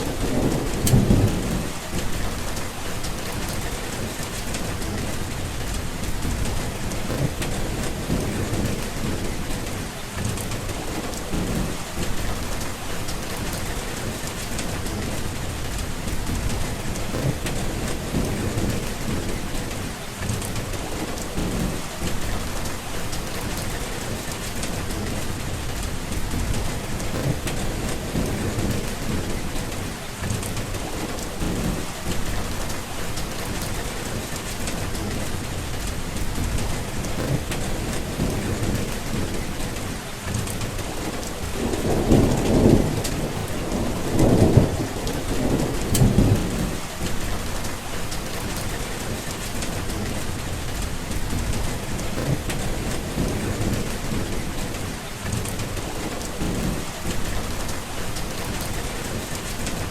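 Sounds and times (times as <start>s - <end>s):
steady rain falling: 0.0s - 59.9s
thunder rumbling: 0.0s - 59.9s.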